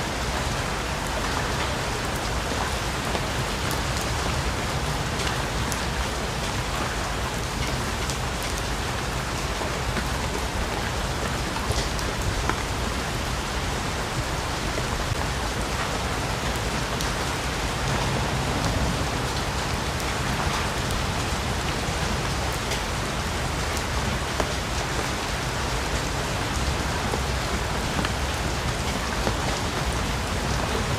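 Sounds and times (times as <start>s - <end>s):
heavy rain falling: 0.0s - 30.9s.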